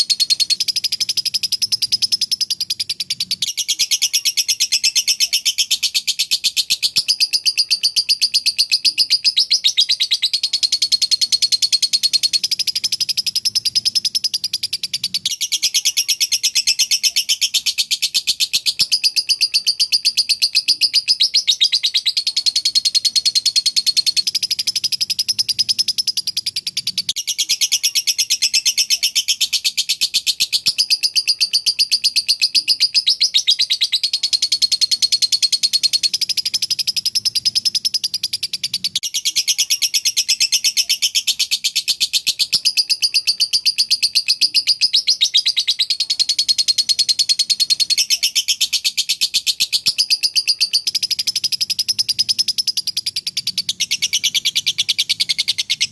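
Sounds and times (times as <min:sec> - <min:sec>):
lovebird high-pitched chatter: 0:00.0 - 0:55.9.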